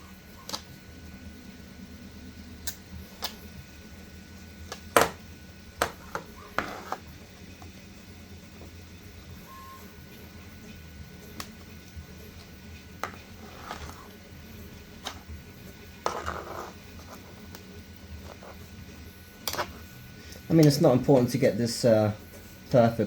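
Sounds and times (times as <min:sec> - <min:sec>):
low steady hum: 0:00.0 - 0:23.0
knife scraping plastic: 0:05.9 - 0:07.1, 0:13.0 - 0:14.2, 0:16.0 - 0:17.6.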